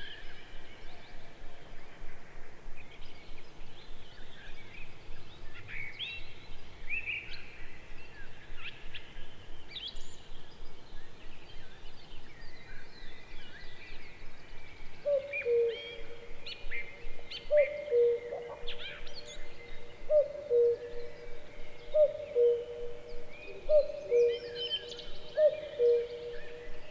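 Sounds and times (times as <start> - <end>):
songbirds chirping: 9.7 - 26.9
cuckoo calling: 17.3 - 26.9.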